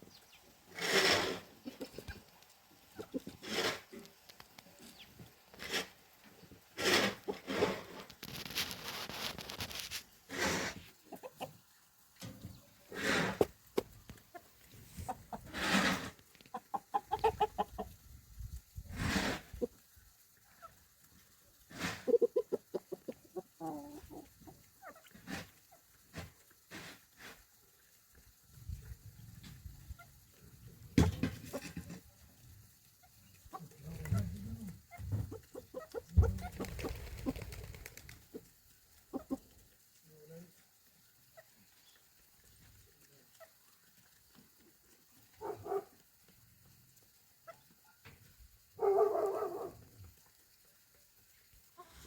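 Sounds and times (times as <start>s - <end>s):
farm animals calling: 12.5s - 17.9s, 32.9s - 37.5s.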